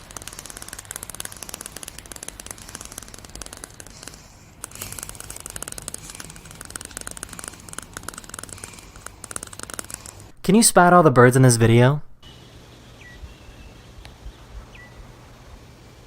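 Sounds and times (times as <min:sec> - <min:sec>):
dog chattering teeth: 0:00.0 - 0:10.3.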